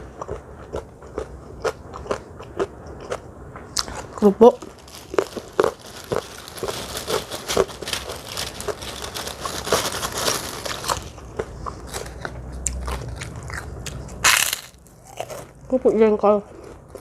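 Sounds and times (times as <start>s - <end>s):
crackers crunching while chewed: 0.0s - 15.7s, 16.6s - 17.0s.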